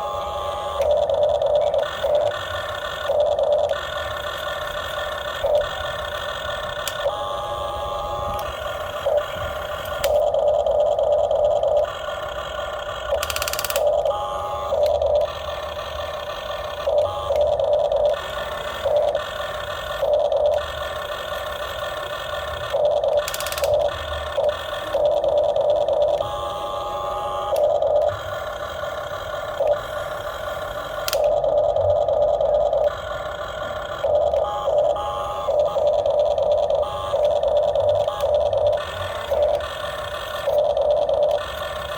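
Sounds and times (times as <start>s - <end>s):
harsh buzz: 0.0s - 41.9s
model excavator motors running: 0.0s - 41.9s
sharp click: 31.0s - 31.4s.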